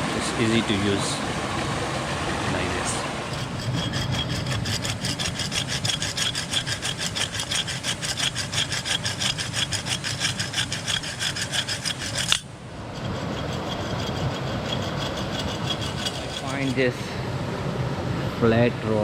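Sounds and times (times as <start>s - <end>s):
hand saw cutting wood: 2.5s - 16.9s.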